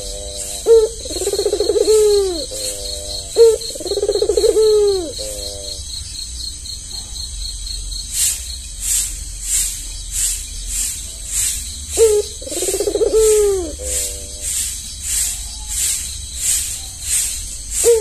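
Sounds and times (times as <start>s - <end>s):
dove cooing: 0.0s - 5.9s, 11.9s - 14.6s, 17.7s - 18.0s
faint high pulsing chirp: 0.0s - 18.0s
rhythmic rattle: 7.6s - 18.0s.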